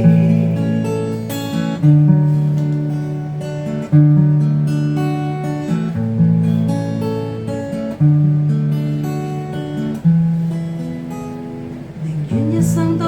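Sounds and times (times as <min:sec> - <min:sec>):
acoustic guitar chords: 0:00.0 - 0:13.0.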